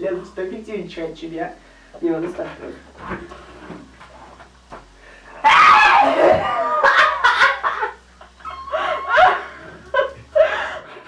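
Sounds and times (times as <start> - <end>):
loud vocal outburst: 5.4 - 6.5
bursts of laughter: 5.7 - 11.0.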